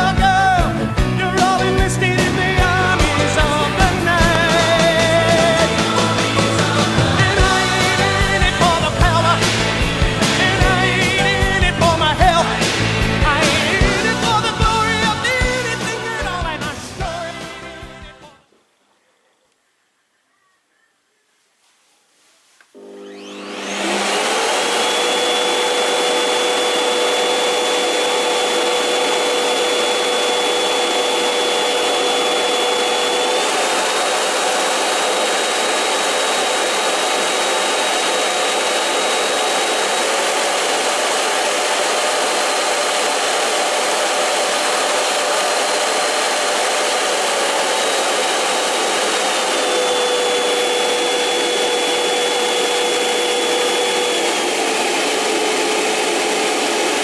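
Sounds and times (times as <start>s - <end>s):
vacuum cleaner running: 0.0s - 17.6s, 22.7s - 57.0s.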